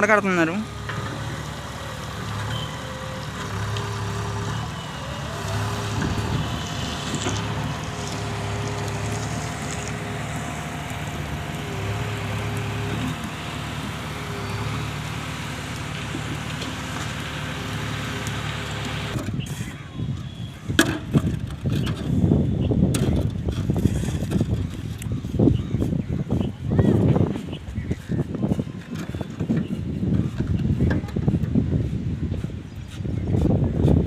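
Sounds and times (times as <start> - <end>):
vehicle engine running: 0.0 - 20.7.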